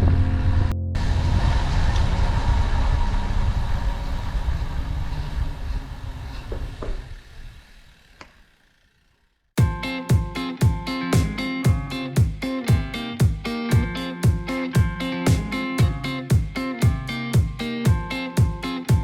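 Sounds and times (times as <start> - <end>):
plucked guitar music: 9.6 - 19.0.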